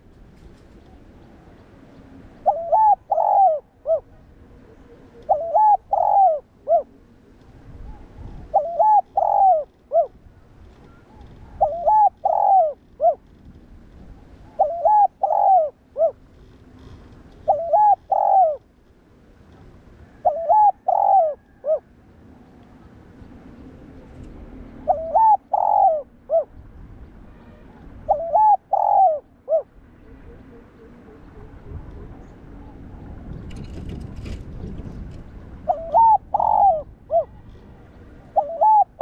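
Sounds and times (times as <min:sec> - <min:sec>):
dove cooing: 0:02.4 - 0:07.0, 0:07.9 - 0:10.2, 0:10.9 - 0:13.2, 0:14.4 - 0:16.2, 0:17.4 - 0:18.6, 0:20.1 - 0:21.9, 0:24.8 - 0:26.5, 0:28.1 - 0:33.0, 0:35.7 - 0:37.4, 0:38.2 - 0:39.0.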